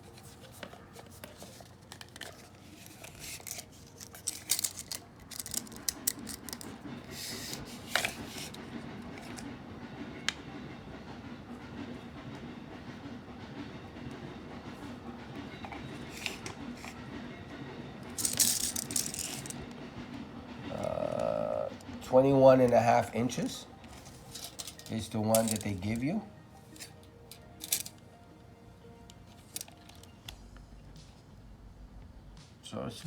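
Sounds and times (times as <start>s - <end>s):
cable handling clicks and rustles: 0.0s - 9.5s, 15.6s - 17.0s, 18.1s - 19.7s, 22.5s - 28.1s, 29.0s - 30.4s
steady low hum: 30.2s - 32.8s.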